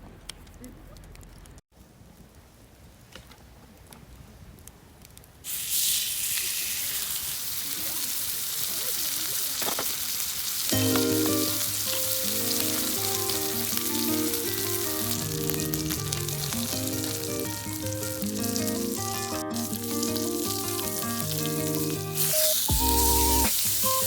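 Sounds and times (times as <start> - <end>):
food sizzling in a pan: 5.5 - 24.0
background music with bass: 10.8 - 24.0.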